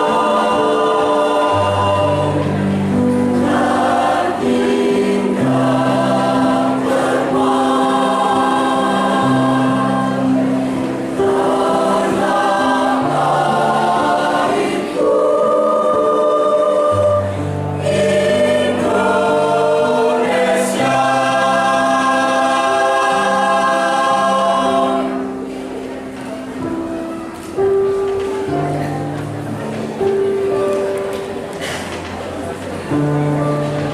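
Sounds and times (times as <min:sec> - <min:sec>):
choir singing held chords: 0:00.0 - 0:25.9.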